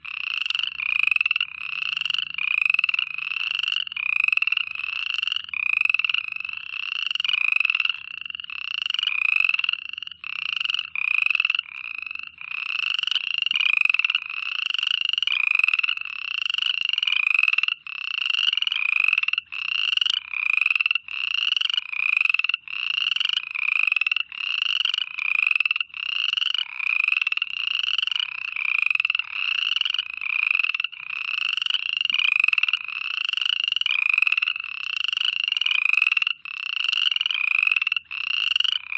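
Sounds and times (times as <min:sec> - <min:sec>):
frogs calling: 0:00.0 - 0:38.9.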